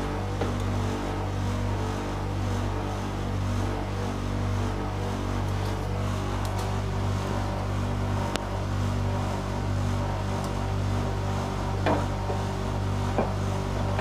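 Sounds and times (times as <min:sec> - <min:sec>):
laundry machine motor hum: 0:00.0 - 0:14.0.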